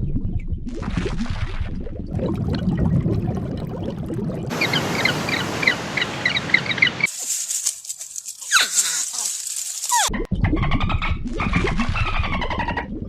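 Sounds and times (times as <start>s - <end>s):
bird chirping rapidly: 4.5s - 7.1s
high hiss: 4.5s - 7.7s
quick falling squeals: 8.4s - 10.2s.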